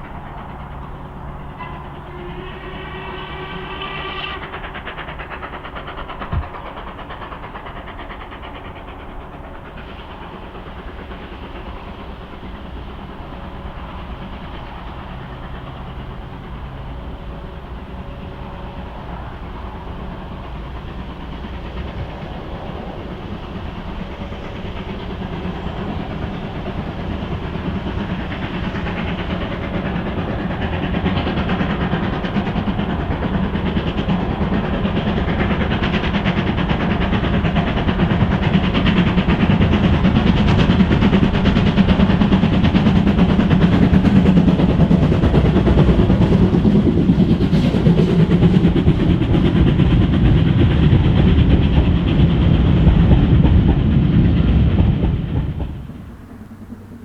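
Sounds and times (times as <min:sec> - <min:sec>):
steam locomotive running: 0:00.0 - 0:57.0.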